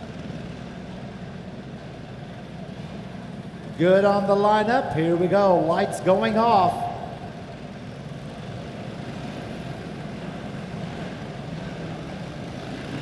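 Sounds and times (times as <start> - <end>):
kart engines droning: 0.0 - 13.0.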